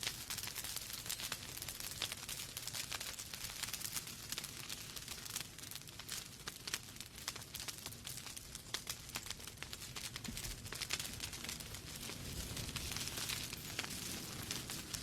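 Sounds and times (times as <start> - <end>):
wood fire crackling: 0.0 - 15.0
soft rush of flame: 9.9 - 15.0.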